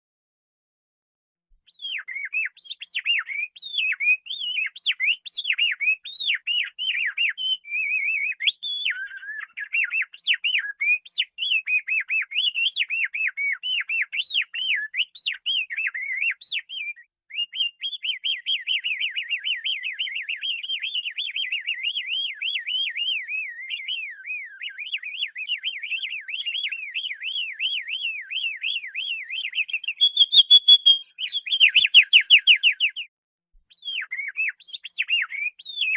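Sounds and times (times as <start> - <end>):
canary singing: 29.8 - 33.0.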